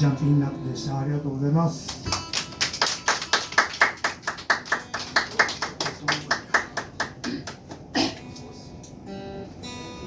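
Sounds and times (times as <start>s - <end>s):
small audience clapping: 1.8s - 8.4s.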